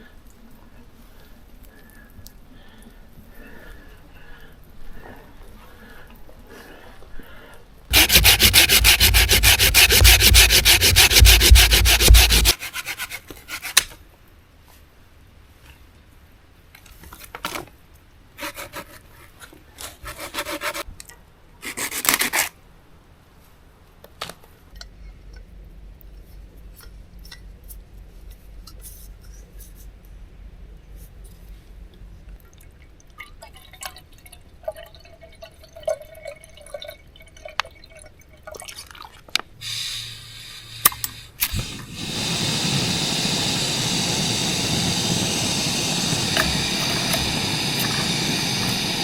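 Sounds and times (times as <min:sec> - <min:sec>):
rapid rubbing or scraping: 0:07.9 - 0:13.8
faint steady hiss: 0:39.4 - 0:49.0.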